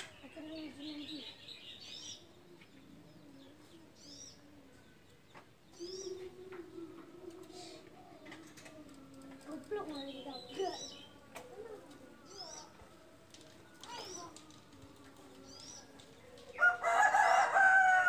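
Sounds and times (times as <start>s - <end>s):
small birds chirping: 0.0s - 17.4s
dove cooing: 5.8s - 15.4s.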